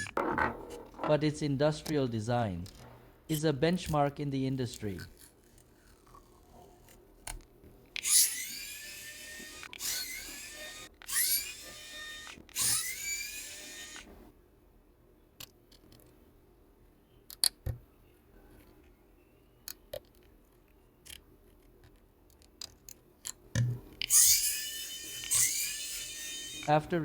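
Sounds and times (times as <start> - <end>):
small screws clicking: 4.8 - 14.1, 17.3 - 17.8, 19.6 - 26.7
electric screwdriver whirring: 8.0 - 14.1.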